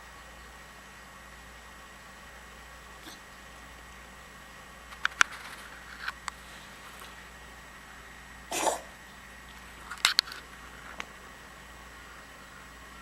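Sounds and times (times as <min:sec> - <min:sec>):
kitten coughing: 0:03.0 - 0:03.4, 0:08.5 - 0:09.0.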